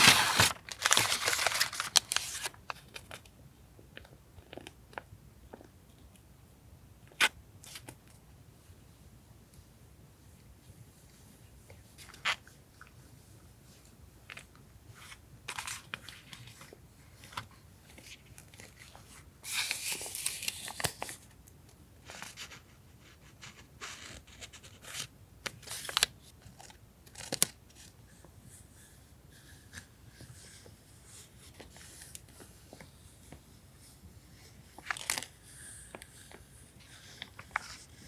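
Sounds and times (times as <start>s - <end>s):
paper tearing: 0.0s - 2.6s
packaging rustling and crinkling: 0.0s - 3.2s.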